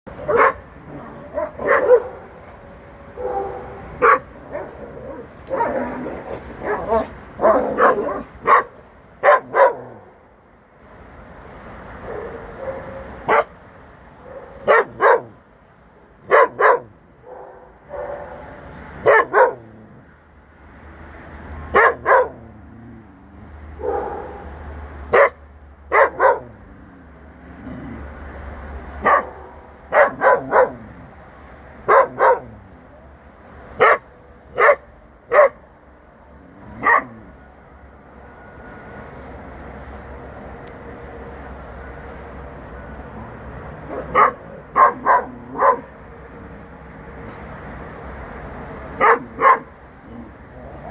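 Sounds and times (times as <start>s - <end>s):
dogs barking: 0.1s - 10.2s, 12.0s - 13.6s, 14.2s - 15.4s, 16.2s - 19.9s, 21.6s - 22.9s, 23.7s - 26.7s, 28.9s - 31.1s, 31.8s - 32.7s, 33.7s - 35.7s, 36.6s - 37.4s, 42.3s - 47.9s, 48.9s - 50.9s.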